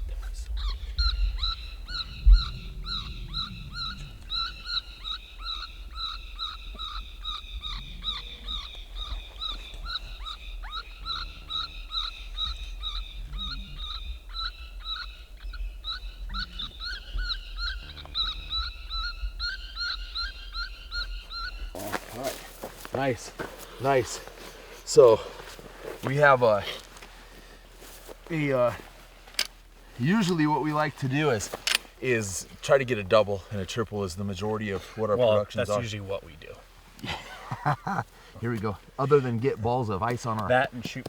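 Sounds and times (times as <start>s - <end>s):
low rumble: 0.0s - 22.1s.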